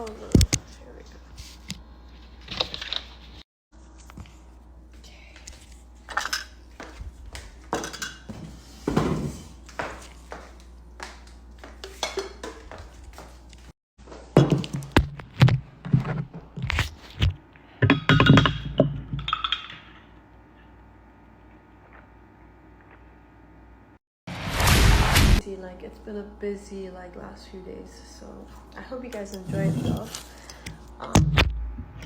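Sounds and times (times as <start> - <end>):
low steady hum: 25.4 - 32.0.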